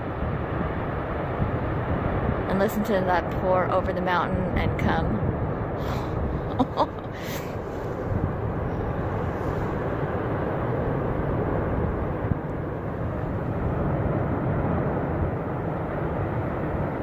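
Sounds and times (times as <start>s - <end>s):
low rushing roar: 0.0s - 17.0s.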